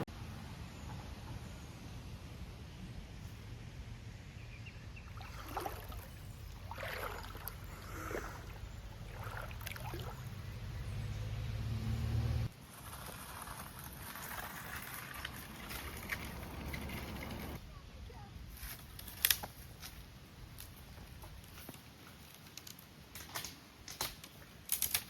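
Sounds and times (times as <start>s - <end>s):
low rumble of river and wind: 0.0s - 25.0s
water sloshing and gurgling: 5.0s - 10.9s.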